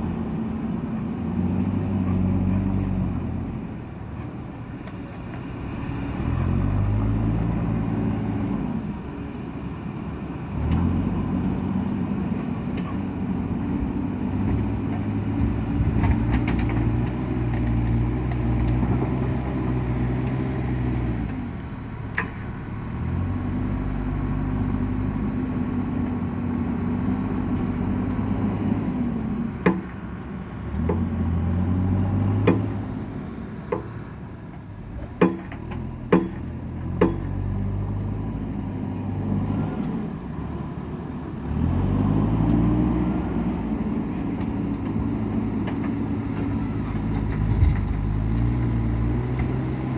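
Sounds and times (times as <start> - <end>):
diesel engine revving: 5.6 - 22.1, 30.6 - 33.4, 36.8 - 49.9
sharp metal clanks: 22.1 - 22.8.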